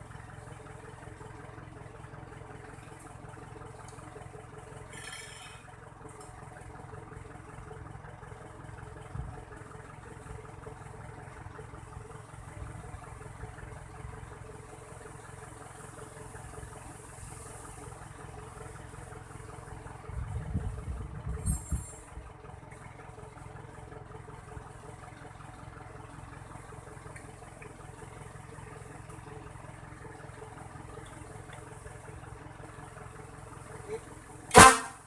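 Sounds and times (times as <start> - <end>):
vehicle engine idling: 0.0 - 35.0.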